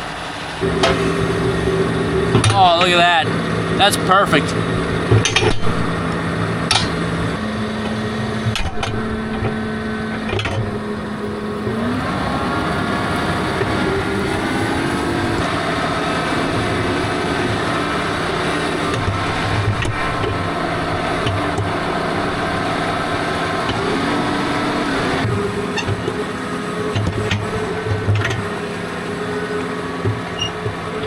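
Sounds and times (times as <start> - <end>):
tractor engine running: 0.0 - 31.0
sharp knocks: 7.8 - 10.8.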